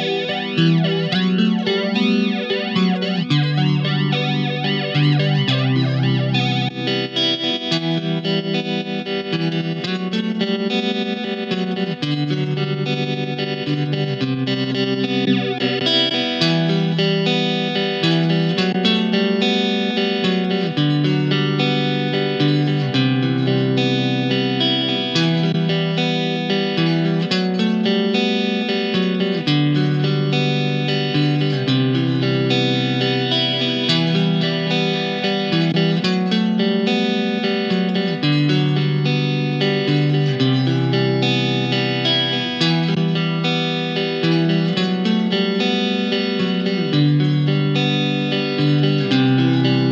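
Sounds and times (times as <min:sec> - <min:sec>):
electric guitar with modulation effect: 0:00.0 - 0:49.9.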